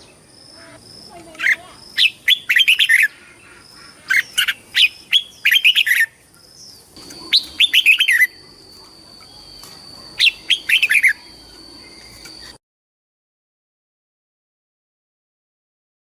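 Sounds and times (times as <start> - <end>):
bird singing warbling whistles: 2.0 - 3.1, 4.2 - 6.2, 7.1 - 8.4, 9.2 - 12.6.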